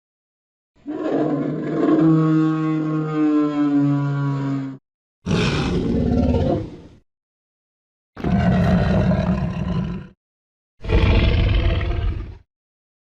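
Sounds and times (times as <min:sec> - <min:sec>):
dinosaur roar: 0:00.8 - 0:06.9, 0:08.2 - 0:10.2, 0:10.8 - 0:12.4
rough deep roar: 0:10.8 - 0:12.4.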